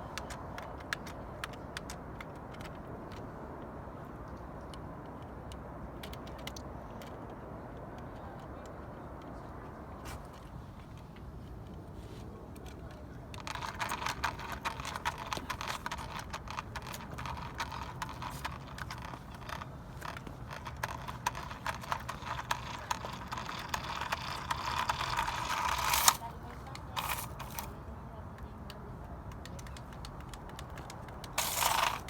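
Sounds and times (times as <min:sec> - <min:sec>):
toy car motor whirring: 0:13.4 - 0:27.8, 0:30.6 - 0:32.0.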